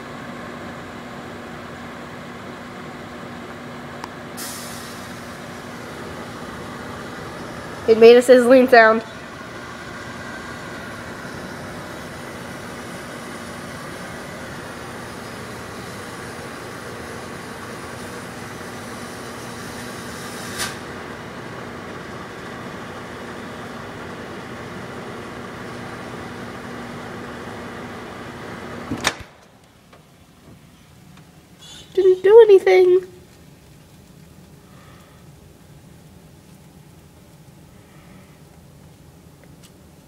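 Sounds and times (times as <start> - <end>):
microwave oven humming: 0.0 - 40.0
crackle in microwave: 33.0 - 40.0.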